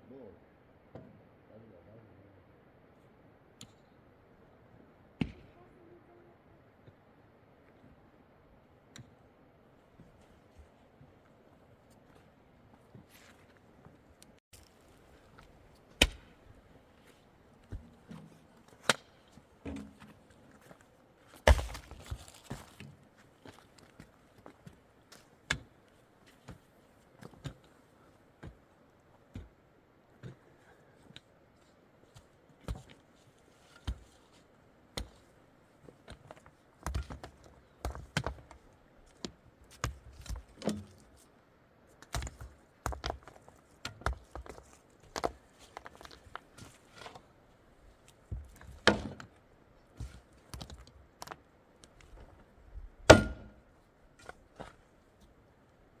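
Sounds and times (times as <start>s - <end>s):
tool striking wood: 53.1s - 53.6s.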